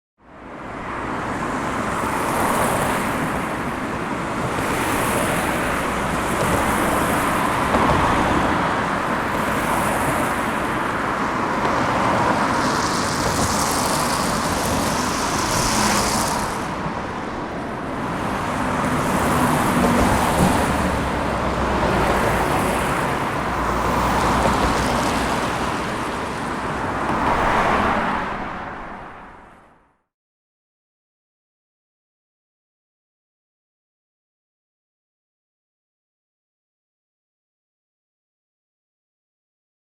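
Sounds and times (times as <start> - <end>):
highway traffic passing: 0.3 - 30.0.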